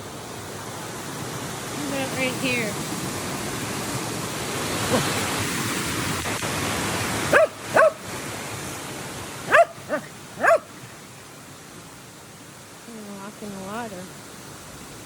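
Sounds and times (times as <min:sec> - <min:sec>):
creek water rushing: 0:00.0 - 0:15.0
dog barking: 0:07.3 - 0:08.0, 0:09.5 - 0:10.8.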